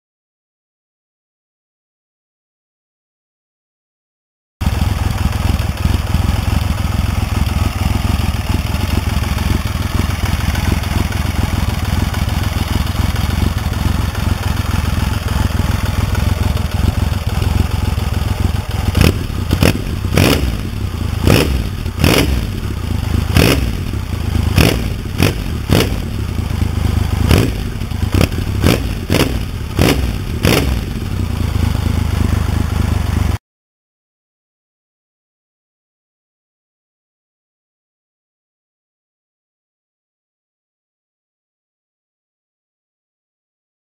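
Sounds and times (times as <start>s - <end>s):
motorcycle engine idling: 4.6s - 33.4s
sharp throttle blips: 8.2s - 31.4s.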